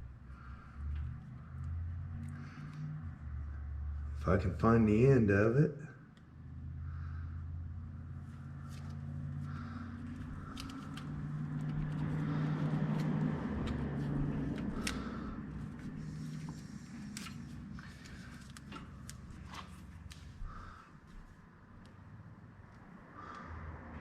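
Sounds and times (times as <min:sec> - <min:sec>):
hands pulling wiring: 0:08.6 - 0:20.6.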